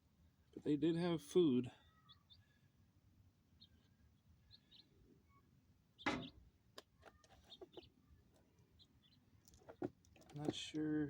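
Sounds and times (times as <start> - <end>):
faint bird chirps: 1.7 - 2.8, 3.5 - 9.9.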